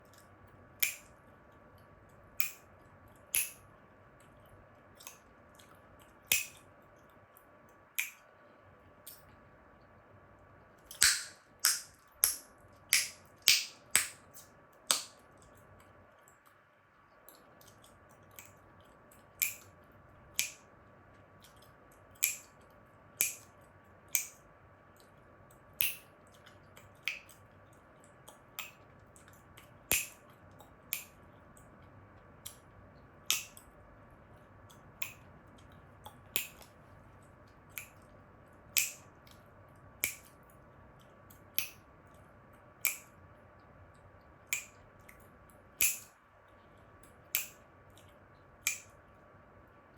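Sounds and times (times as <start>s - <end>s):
chewing gum snapping: 10.9s - 16.6s, 17.3s - 19.8s.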